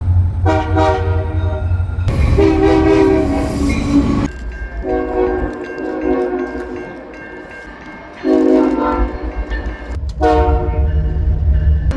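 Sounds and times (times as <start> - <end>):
low train rumble: 0.0 - 11.9
train horn blasts: 0.4 - 7.0, 8.2 - 9.5, 10.2 - 11.0.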